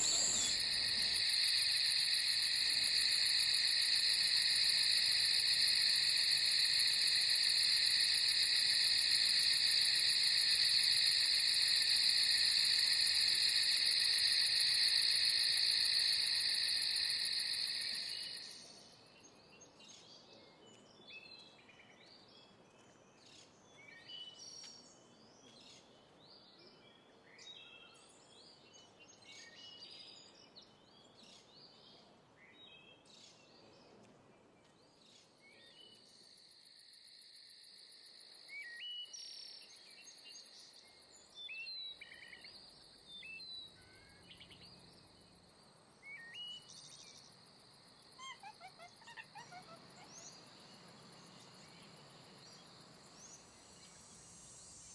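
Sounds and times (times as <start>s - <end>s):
bird song falling in pitch: 0.0s - 1.2s
small birds chirping: 0.0s - 1.4s
insect high trill: 0.0s - 18.6s.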